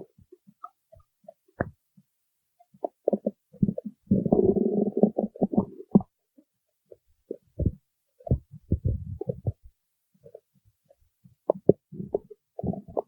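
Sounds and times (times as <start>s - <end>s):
stomach growling: 2.7s - 6.2s, 6.9s - 13.0s.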